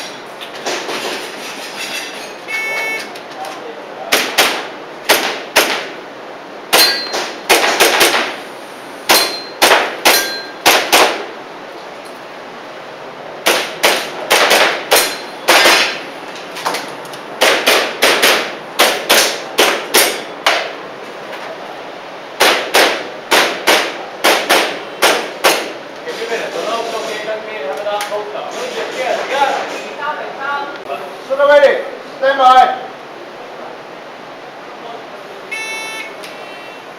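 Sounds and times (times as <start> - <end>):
gas pistol firing: 4.1 - 5.9, 6.7 - 8.4, 13.4 - 16.0, 17.4 - 20.7, 22.4 - 25.7.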